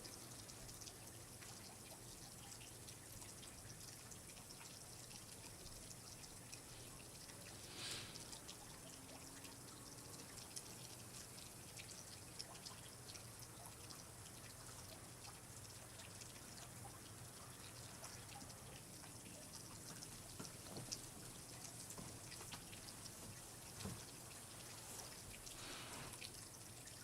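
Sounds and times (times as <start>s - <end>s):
water trickling and dripping: 0.0s - 27.0s
brief hiss: 7.6s - 8.2s, 25.6s - 26.2s.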